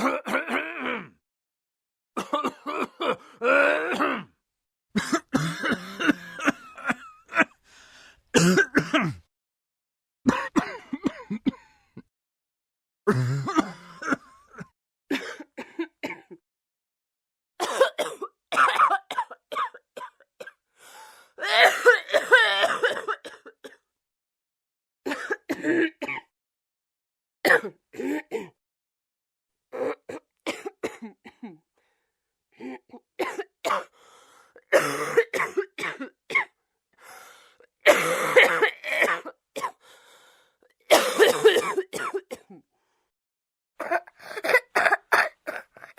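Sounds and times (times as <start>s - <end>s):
person coughing: 0.0s - 1.1s, 2.2s - 4.3s, 5.0s - 7.6s, 8.4s - 9.3s, 10.3s - 11.7s, 13.1s - 16.4s, 17.6s - 20.6s, 21.4s - 23.8s, 25.1s - 26.3s, 27.5s - 28.6s, 29.8s - 31.6s, 32.6s - 33.9s, 34.7s - 36.5s, 37.9s - 39.8s, 40.9s - 42.6s, 43.8s - 45.9s
person clearing throat: 0.0s - 1.2s, 8.4s - 9.3s, 13.1s - 16.4s, 17.6s - 19.7s, 34.7s - 36.5s, 37.9s - 39.8s, 40.9s - 42.6s.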